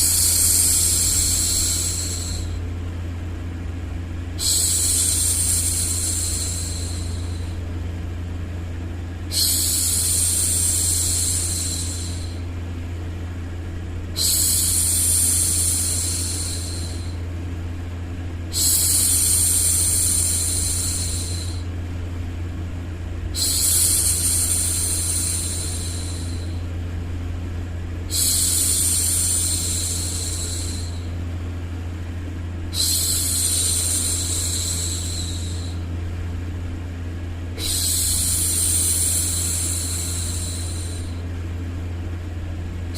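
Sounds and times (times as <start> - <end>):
white noise with low hum: 0.0 - 42.9
woman shushing: 14.2 - 17.2, 37.6 - 41.2.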